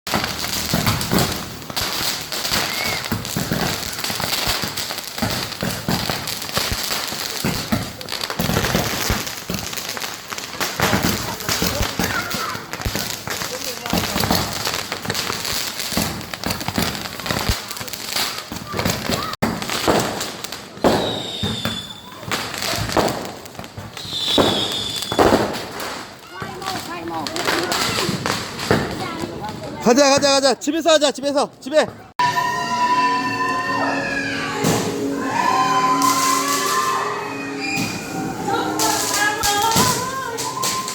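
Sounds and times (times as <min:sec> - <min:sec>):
firecrackers crackling: 0:00.1 - 0:31.9, 0:32.8 - 0:40.9
high whistle falling in pitch: 0:32.2 - 0:38.6.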